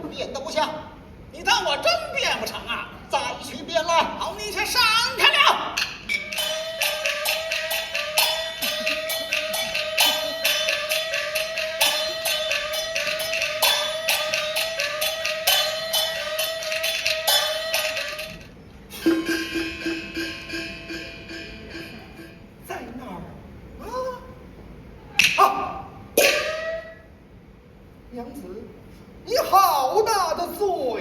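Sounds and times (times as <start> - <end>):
clapper and percussion beat: 5.8 - 18.5.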